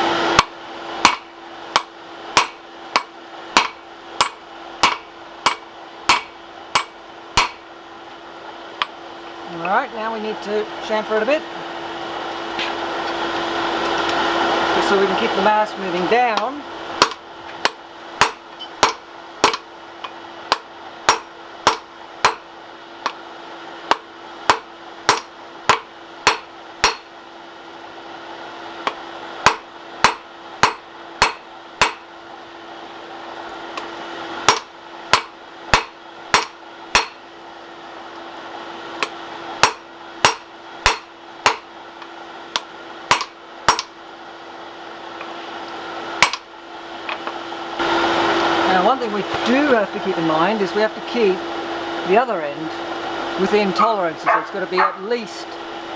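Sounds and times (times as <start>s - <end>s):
hammer striking hot steel: 0.4s - 7.7s, 16.3s - 23.2s, 23.8s - 27.2s, 28.8s - 32.1s, 33.8s - 37.3s, 39.0s - 41.7s, 42.5s - 44.0s, 46.2s - 46.5s.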